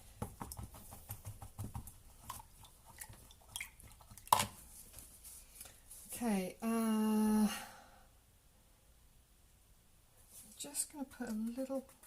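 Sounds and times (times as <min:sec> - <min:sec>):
paintbrush dabbing and scrubbing: 0:00.0 - 0:06.2.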